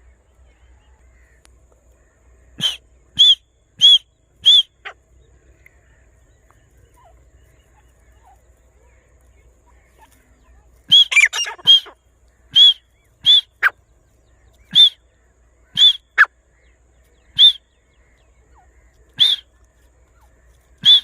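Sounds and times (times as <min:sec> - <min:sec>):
bird whistled calls: 0:02.6 - 0:05.0, 0:10.9 - 0:13.8, 0:14.6 - 0:15.0, 0:15.7 - 0:16.3, 0:17.3 - 0:17.8, 0:19.2 - 0:19.5, 0:20.8 - 0:21.0.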